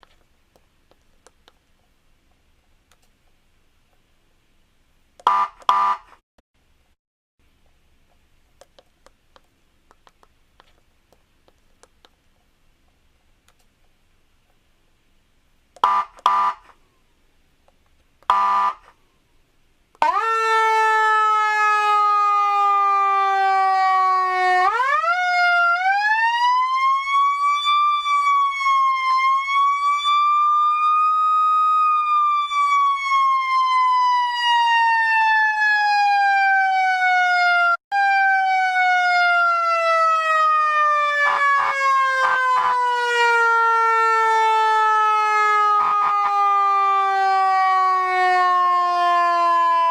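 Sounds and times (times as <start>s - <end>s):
faint clicks: 0.0s - 4.0s, 7.6s - 14.6s
short siren blasts: 5.2s - 6.2s, 15.8s - 16.7s, 18.3s - 19.0s, 20.0s - 49.9s
electronic siren wail: 5.3s - 6.2s, 15.8s - 16.7s, 18.3s - 18.9s, 20.0s - 49.9s.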